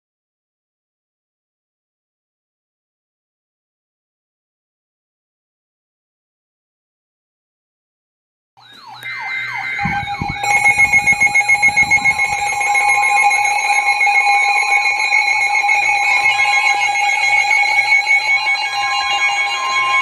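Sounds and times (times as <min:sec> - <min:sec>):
steady electronic alarm tones: 0:08.6 - 0:20.0
wailing sirens: 0:08.6 - 0:20.0.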